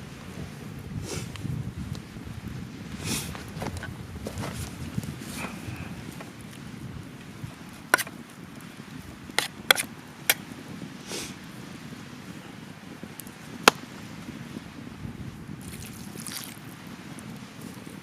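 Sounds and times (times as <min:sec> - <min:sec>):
stream water rushing: 0:15.6 - 0:18.0.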